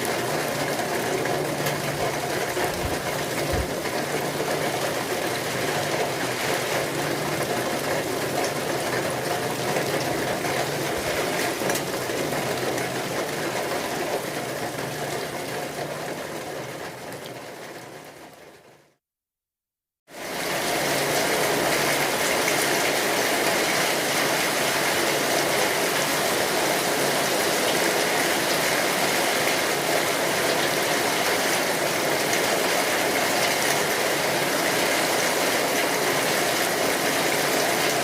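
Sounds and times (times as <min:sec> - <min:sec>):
steady rain hiss: 0:00.0 - 0:17.2, 0:20.2 - 0:38.0.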